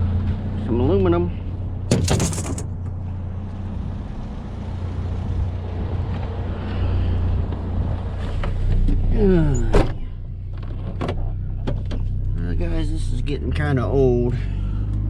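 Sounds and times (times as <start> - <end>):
road noise: 0.0 - 15.0
sharp knock: 1.9 - 2.7.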